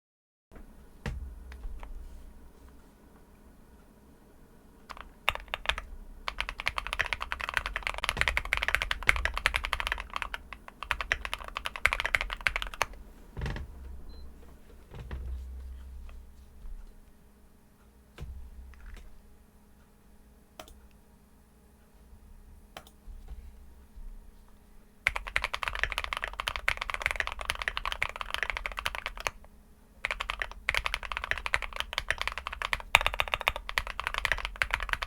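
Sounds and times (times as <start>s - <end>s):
mechanical keyboard typing: 4.8s - 13.0s, 25.0s - 35.0s.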